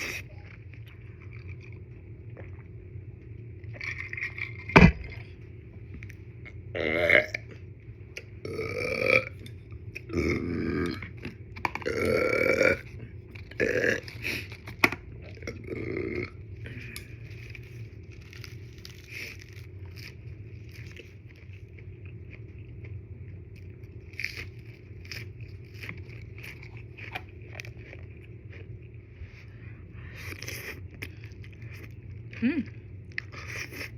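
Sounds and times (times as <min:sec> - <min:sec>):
person burping: 0:11.7 - 0:12.8, 0:13.6 - 0:14.1.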